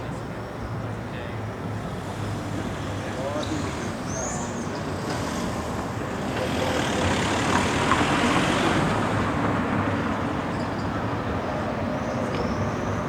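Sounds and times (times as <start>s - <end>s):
city street traffic: 0.0s - 13.0s
vehicle passing close: 1.8s - 10.3s.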